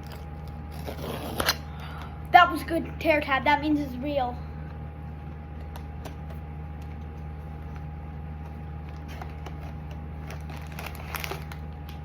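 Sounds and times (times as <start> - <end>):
steady low hum: 0.0 - 12.0
packaging clicking and crinkling: 8.5 - 12.0.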